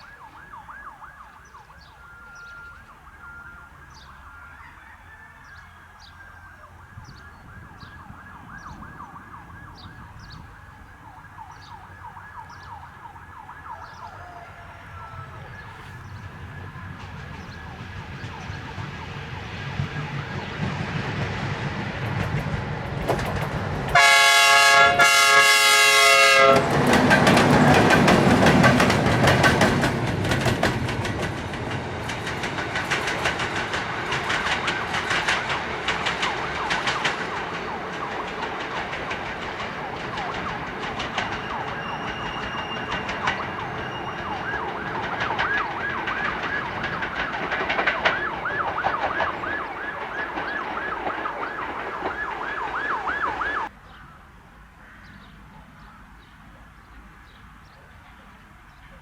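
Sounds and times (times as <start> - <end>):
wavering siren-like tone: 0.0 - 5.0, 6.1 - 20.5, 34.2 - 53.7
train clattering over rail joints: 14.9 - 53.7
locomotive horn blasts: 23.9 - 27.1.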